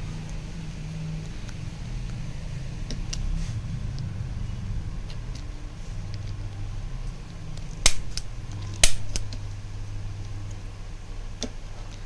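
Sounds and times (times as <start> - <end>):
steady low hum: 0.0 - 12.0
adjustment gun clicks: 7.9 - 9.4.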